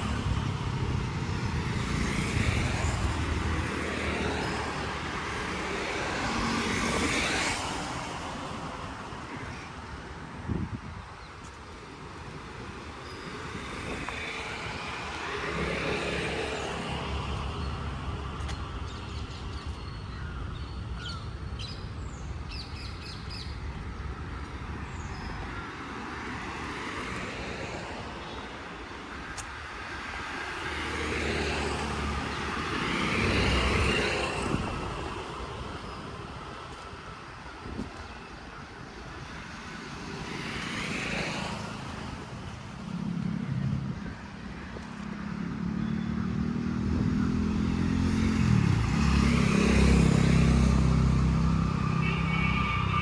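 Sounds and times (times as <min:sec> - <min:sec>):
road traffic passing: 0:00.0 - 0:53.0
vehicle passing by: 0:13.6 - 0:18.4, 0:30.4 - 0:35.8, 0:40.2 - 0:53.0.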